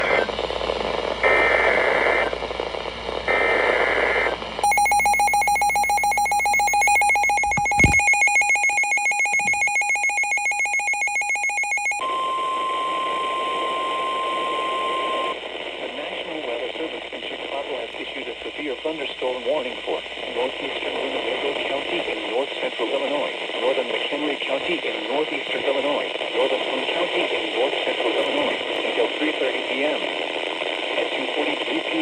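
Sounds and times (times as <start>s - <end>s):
steady single-pitch alarm tone: 4.6s - 15.4s.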